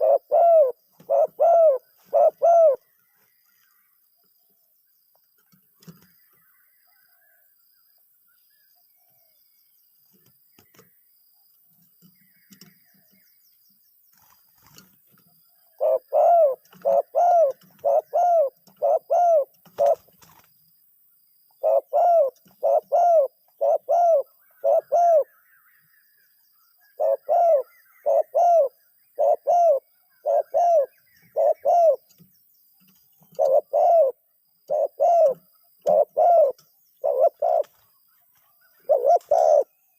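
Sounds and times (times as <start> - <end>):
dove cooing: 0.0 - 2.9, 15.7 - 20.1, 21.6 - 25.4, 26.9 - 32.2, 33.3 - 37.9, 38.8 - 39.8.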